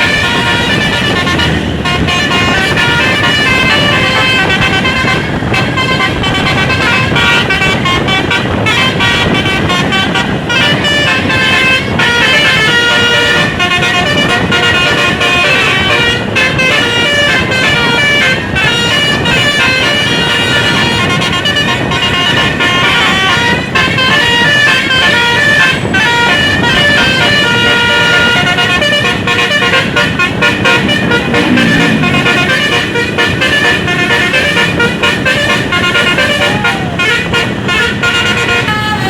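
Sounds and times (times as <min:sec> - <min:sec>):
bus musical horn tune: 0:00.0 - 0:39.0
engine and road noise: 0:00.0 - 0:39.0.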